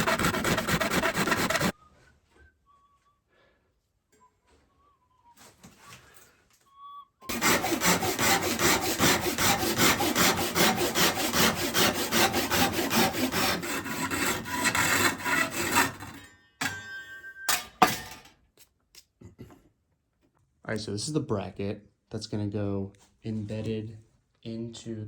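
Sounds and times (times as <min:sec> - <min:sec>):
hand saw cutting wood: 0:00.0 - 0:01.7, 0:07.3 - 0:16.2.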